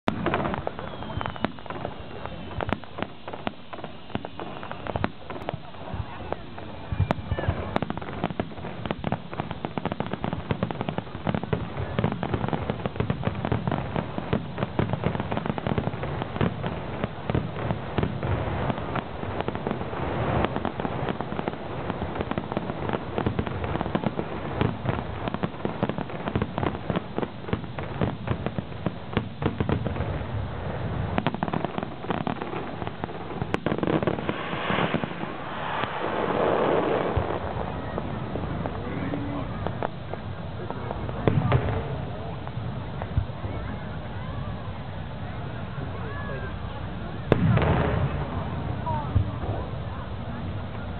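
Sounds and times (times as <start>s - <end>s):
fireworks bangs and crackles: 0.0s - 50.9s.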